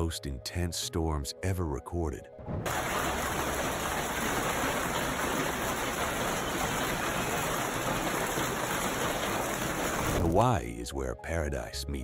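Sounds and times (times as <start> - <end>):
hail pelting down: 2.6 - 10.4.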